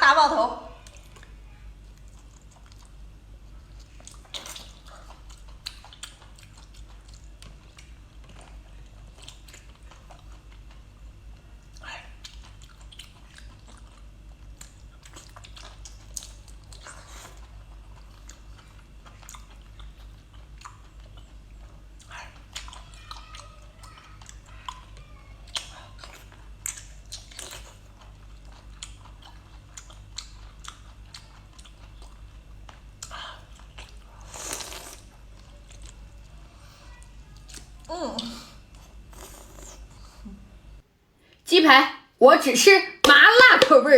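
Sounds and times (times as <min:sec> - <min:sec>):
low steady hum: 0:00.0 - 0:43.9
person chewing food: 0:00.8 - 0:40.8.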